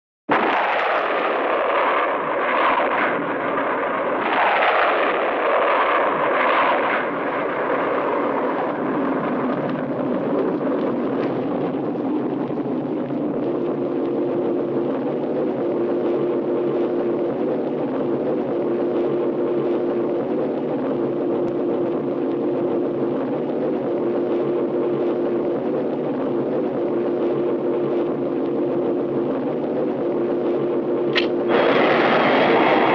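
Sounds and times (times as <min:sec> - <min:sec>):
rocket thruster whooshing: 0:00.3 - 0:13.8, 0:25.6 - 0:32.9
thruster drone: 0:00.3 - 0:32.9.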